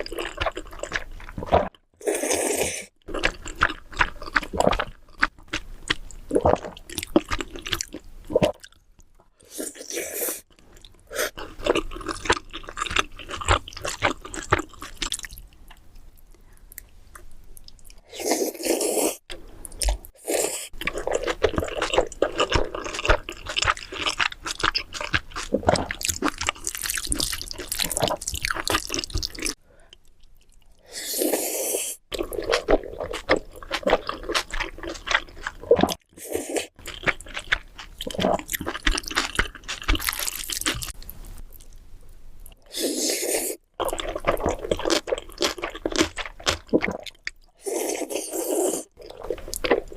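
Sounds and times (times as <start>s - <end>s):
chewing with wet mouth clicks: 36.8s - 41.8s.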